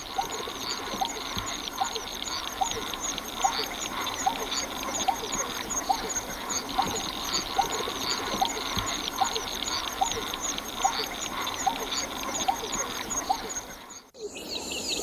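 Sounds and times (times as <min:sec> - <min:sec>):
chorus of frogs and insects: 0:00.0 - 0:15.0.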